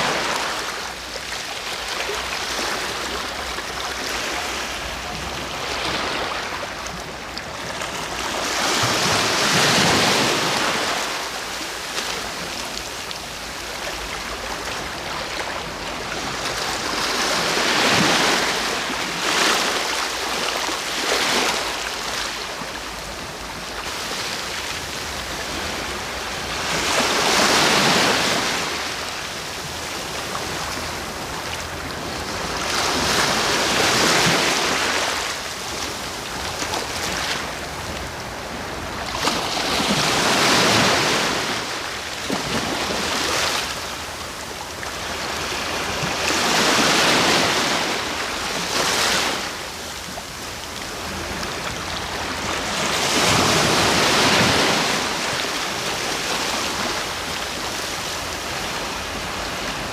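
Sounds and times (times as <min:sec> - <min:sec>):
hiss of surf: 0:00.0 - 0:06.9
ocean waves breaking on shore: 0:00.0 - 0:59.9.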